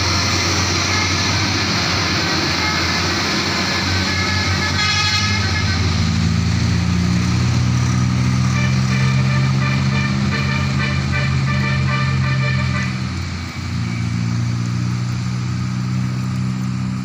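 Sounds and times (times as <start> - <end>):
truck diesel engine running: 0.0 - 17.0
multi-tone air horn: 0.8 - 1.5, 2.4 - 3.2, 3.8 - 6.0, 8.4 - 13.1.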